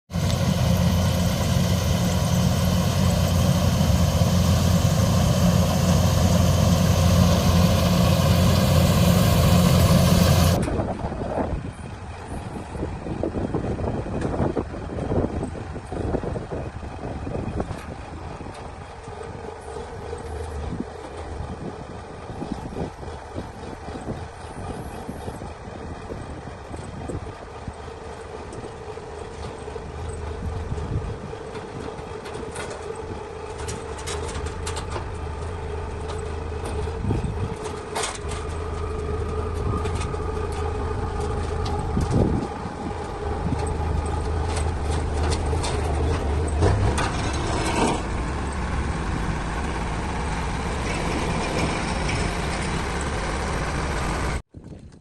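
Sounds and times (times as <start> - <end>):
farm machinery diesel engine: 0.0 - 54.5
metallic clanks and rattles: 28.2 - 53.8.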